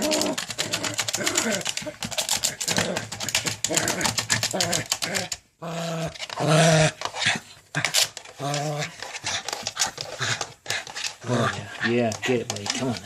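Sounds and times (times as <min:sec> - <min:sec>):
dog vocalizing: 0:00.0 - 0:06.4.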